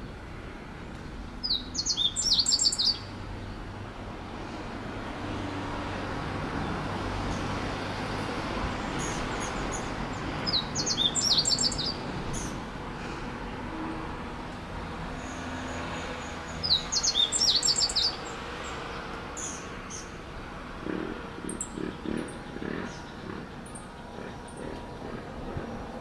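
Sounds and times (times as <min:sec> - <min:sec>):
steady background noise: 0:00.0 - 0:26.0
songbird singing high phrase: 0:01.4 - 0:03.1, 0:10.5 - 0:12.6, 0:16.6 - 0:18.4.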